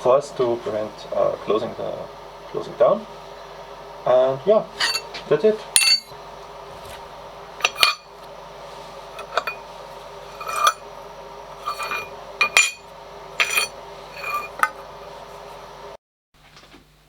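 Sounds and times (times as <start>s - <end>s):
steady background hum: 0.0s - 17.0s
metallic clinks and clanks: 5.8s - 6.1s, 9.2s - 9.6s, 10.4s - 10.8s, 11.6s - 14.8s.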